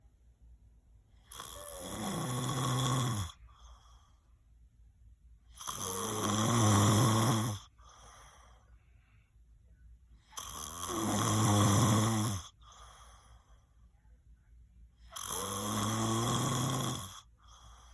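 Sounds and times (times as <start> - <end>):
person snoring: 1.2 - 3.9, 5.6 - 8.6, 10.3 - 13.4, 15.1 - 17.9
soft breath out: 7.7 - 9.6, 12.6 - 14.1.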